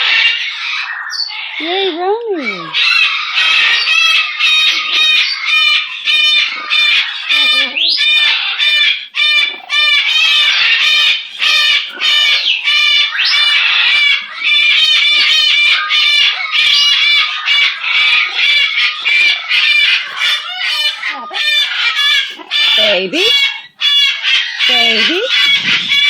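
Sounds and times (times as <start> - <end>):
parrot squawking: 0.0 - 26.0.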